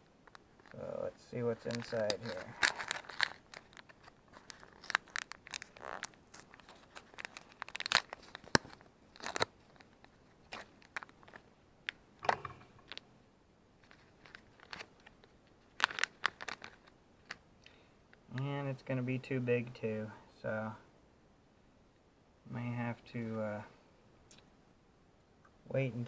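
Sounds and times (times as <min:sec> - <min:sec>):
packaging tearing and crinkling: 0:00.2 - 0:11.5, 0:12.8 - 0:13.0, 0:13.8 - 0:17.4.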